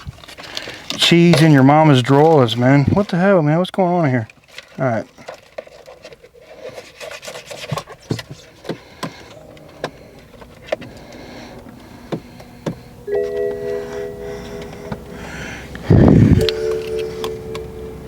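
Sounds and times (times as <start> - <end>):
clicks and knocks of car controls: 8.1 - 13.5
electronic warning chime: 13.0 - 18.0.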